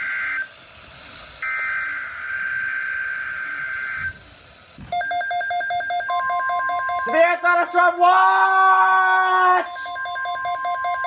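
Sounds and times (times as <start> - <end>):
pulsing electronic tone: 1.4 - 7.7.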